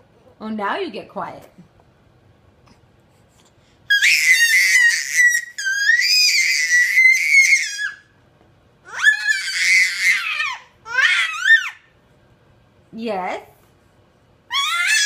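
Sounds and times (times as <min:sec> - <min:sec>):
baby squealing: 0:03.9 - 0:08.0, 0:08.9 - 0:11.8, 0:14.5 - 0:15.0.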